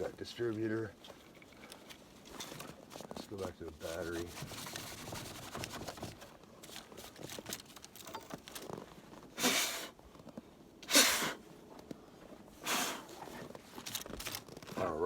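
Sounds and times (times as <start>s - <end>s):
hand brushing snow: 3.8s - 5.5s.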